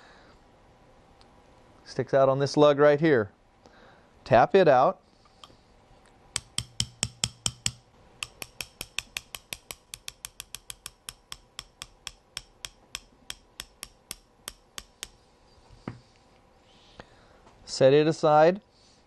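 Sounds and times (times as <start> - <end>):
hammer tapping a pin punch: 6.4 - 15.2.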